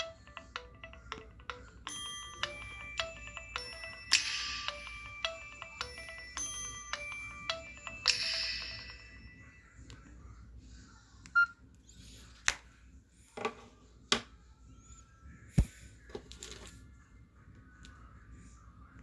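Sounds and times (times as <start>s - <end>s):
bright ringtone chime: 0.0s - 9.8s.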